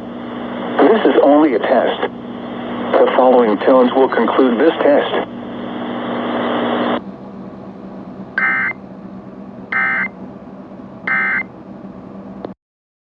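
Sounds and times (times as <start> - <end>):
radio static burst: 0.3 - 7.0
digital data tone bursts: 8.4 - 8.8, 9.7 - 10.1, 11.1 - 11.5.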